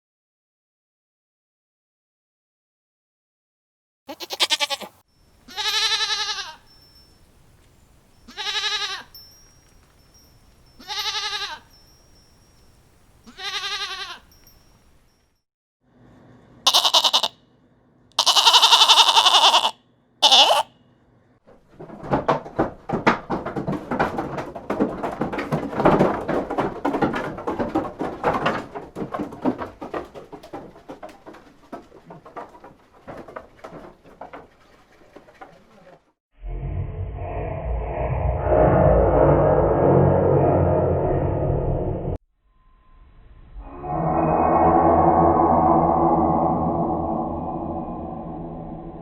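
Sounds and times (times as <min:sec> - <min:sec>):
goats bleating: 0:04.1 - 0:06.6, 0:08.3 - 0:09.1, 0:10.8 - 0:11.6, 0:13.3 - 0:14.2, 0:16.7 - 0:17.3, 0:18.2 - 0:20.7.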